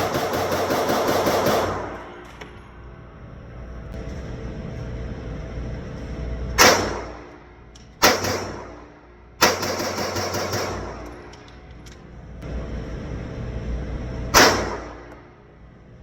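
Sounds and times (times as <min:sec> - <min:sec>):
rapid string of gunshots: 0:00.0 - 0:02.0, 0:08.0 - 0:11.0, 0:14.3 - 0:15.1.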